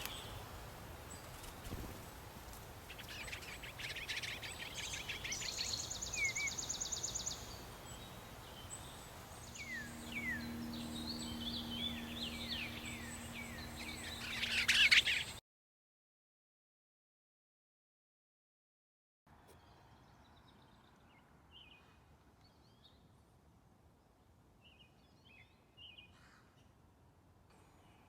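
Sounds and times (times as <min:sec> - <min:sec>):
songbirds chattering and trilling: 0:00.0 - 0:15.4
low steady hum: 0:07.4 - 0:15.4.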